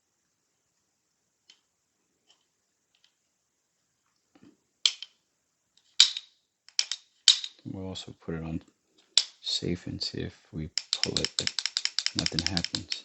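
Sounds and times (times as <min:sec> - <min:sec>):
trigger and hammer metal clicks: 0:10.8 - 0:13.0.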